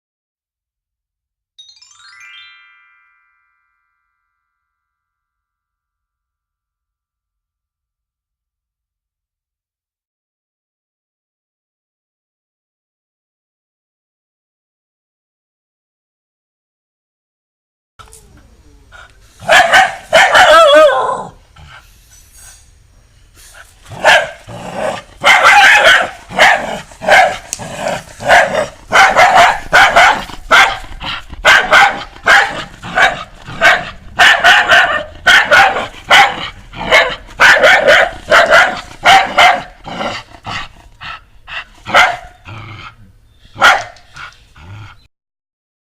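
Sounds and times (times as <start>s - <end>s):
dog barking: 19.4s - 21.4s, 23.9s - 39.8s, 41.9s - 42.4s, 43.6s - 44.1s.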